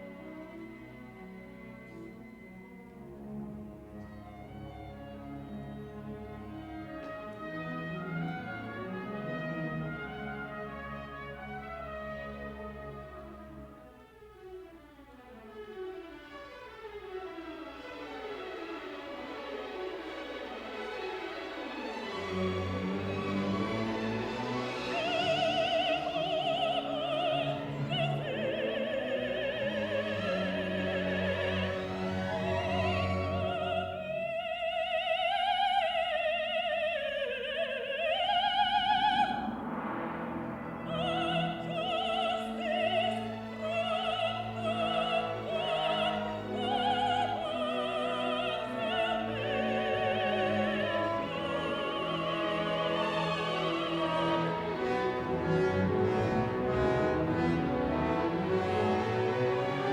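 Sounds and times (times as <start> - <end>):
symphony orchestra playing: 0.0 - 59.9
woman singing: 24.9 - 39.5, 40.9 - 54.6.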